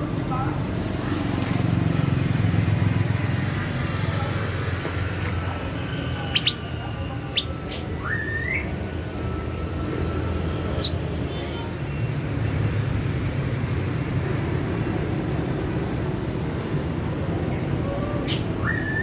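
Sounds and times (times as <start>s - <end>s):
young bird chirping: 6.2s - 8.7s, 10.7s - 11.0s.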